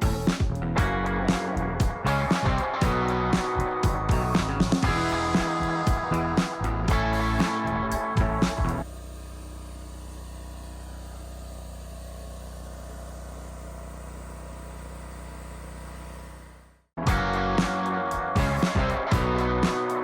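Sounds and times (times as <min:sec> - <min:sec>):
music: 0:00.0 - 0:08.8, 0:17.0 - 0:20.0.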